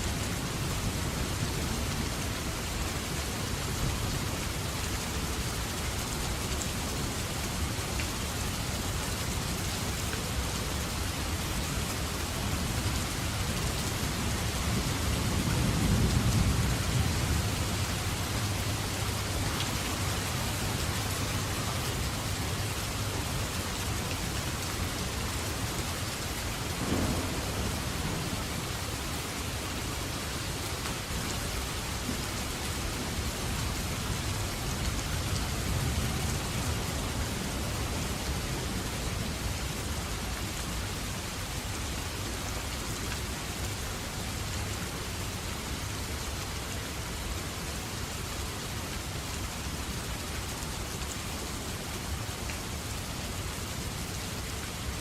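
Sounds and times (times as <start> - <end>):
steady rain falling: 0.0 - 55.0
low rumble of thunder: 12.5 - 19.3, 26.1 - 31.3.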